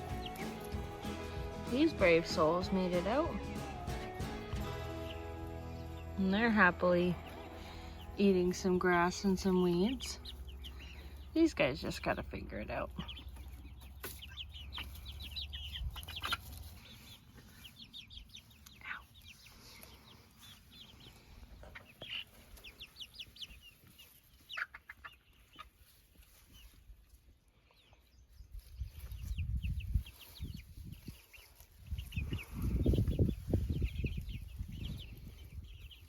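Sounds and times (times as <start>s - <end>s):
hens clucking: 0.0s - 28.0s.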